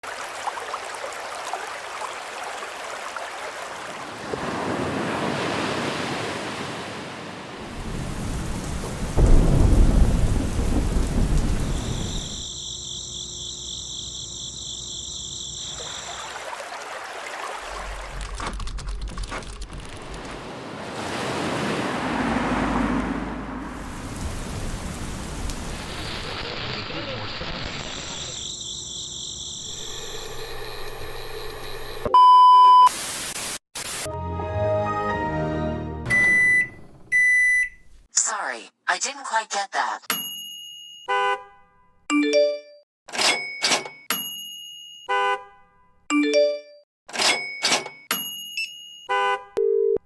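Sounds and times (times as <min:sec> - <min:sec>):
waves: 0:00.0 - 0:09.8, 0:15.7 - 0:18.2, 0:19.8 - 0:26.5
rushing water: 0:00.0 - 0:12.3, 0:15.7 - 0:18.4, 0:19.7 - 0:26.7
deep rumble of thunder: 0:07.7 - 0:12.4
crickets chirring: 0:09.0 - 0:16.7, 0:27.7 - 0:32.0.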